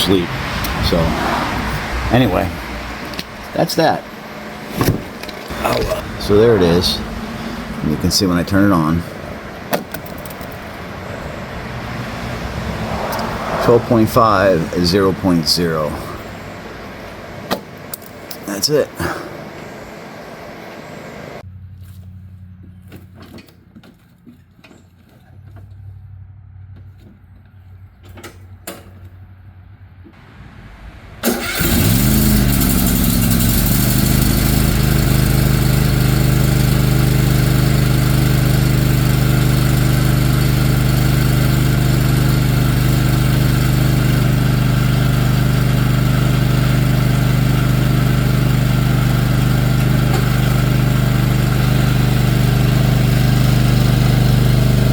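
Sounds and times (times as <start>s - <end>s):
lawn tractor engine starting: 0.0s - 11.1s, 31.2s - 54.9s.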